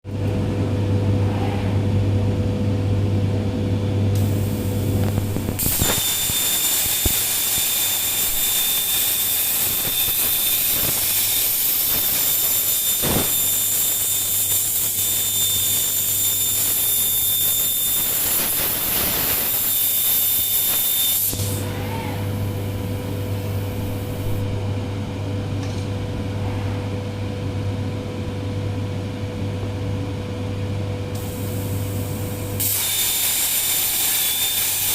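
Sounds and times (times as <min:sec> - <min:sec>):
electrical machine hum: 0:00.1 - 0:34.9
plasma cutter hissing whine: 0:04.2 - 0:21.8, 0:31.2 - 0:32.0, 0:32.6 - 0:34.9.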